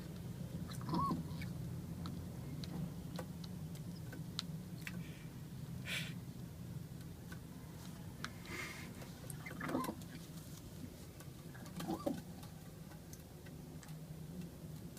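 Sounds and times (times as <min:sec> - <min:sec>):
pigeon cooing: 0:00.7 - 0:01.5, 0:09.4 - 0:10.0, 0:11.6 - 0:12.4.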